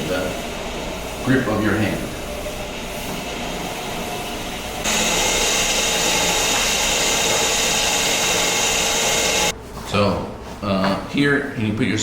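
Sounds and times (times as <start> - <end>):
motorized cable reel whine: 0.3 - 9.5.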